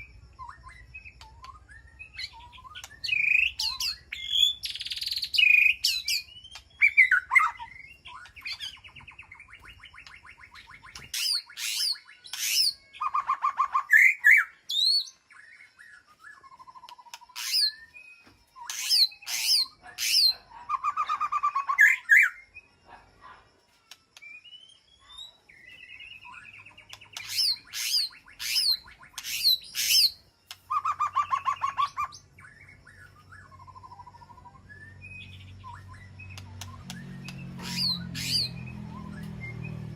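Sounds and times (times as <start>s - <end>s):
bird buzzy trills: 0.0s - 14.8s, 15.8s - 18.0s, 18.6s - 22.6s, 26.1s - 39.9s
bird whip-like sweeping notes: 35.6s - 39.9s.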